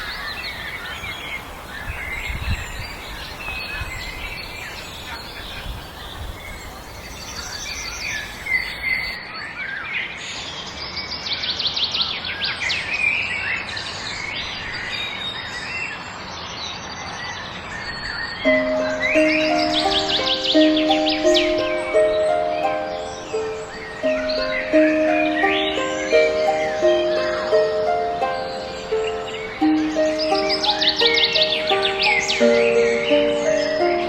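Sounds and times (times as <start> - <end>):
wild birds singing and chirping: 0.0 - 34.0
background hiss: 18.5 - 34.0.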